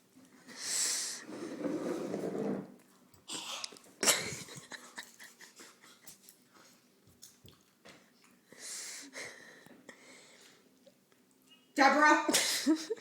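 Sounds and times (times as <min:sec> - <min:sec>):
breathing: 0:08.5 - 0:10.6.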